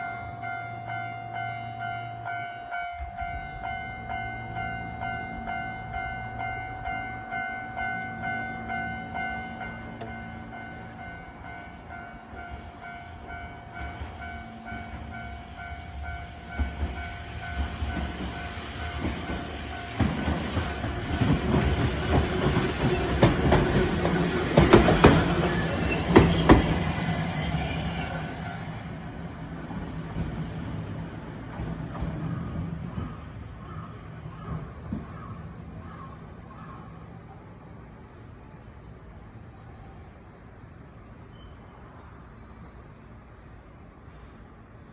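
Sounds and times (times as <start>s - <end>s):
tram running noise: 0.0s - 44.9s
tram wheels clacking on track: 3.2s - 37.3s.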